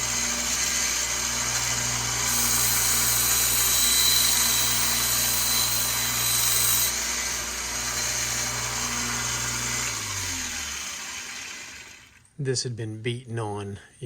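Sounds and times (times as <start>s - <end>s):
grinder motor humming: 0.0s - 12.2s
knife blade grinding: 2.3s - 7.1s.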